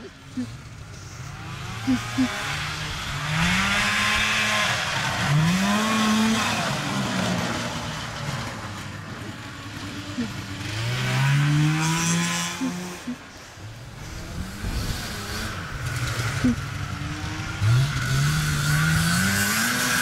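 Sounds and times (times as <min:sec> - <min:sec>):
snowmobile engine accelerating: 0:00.0 - 0:20.0
steady rushing hiss: 0:12.7 - 0:18.4.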